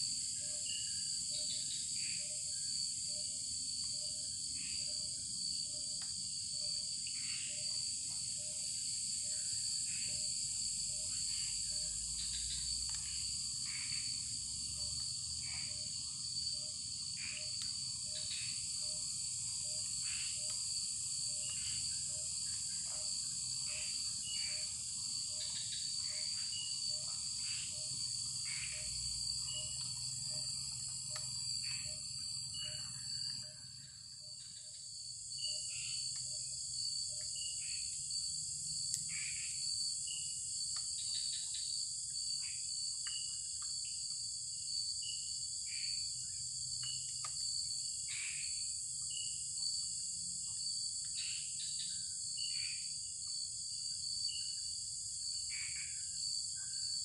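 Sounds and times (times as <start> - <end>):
crickets and insects buzzing: 0.0 - 57.0.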